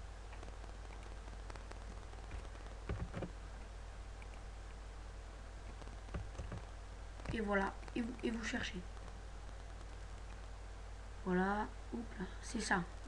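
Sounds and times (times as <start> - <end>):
steady low hum: 0.0 - 13.0
keyboard and mouse clicks: 0.3 - 4.4, 5.7 - 8.3.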